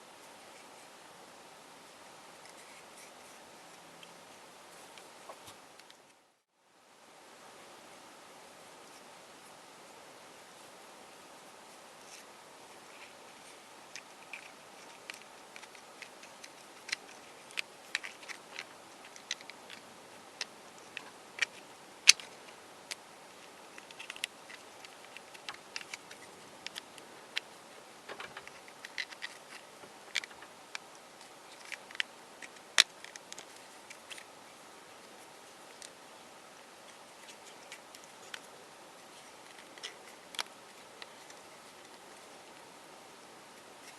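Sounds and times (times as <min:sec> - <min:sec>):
faint steady hiss: 0:00.0 - 0:43.9.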